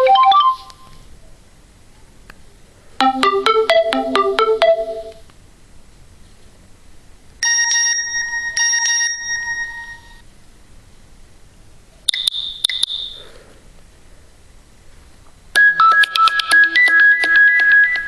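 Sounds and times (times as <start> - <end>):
bell-like phone chimes: 3.0 - 5.2, 7.4 - 10.2
high pinging clicks: 12.1 - 13.2, 15.6 - 18.0.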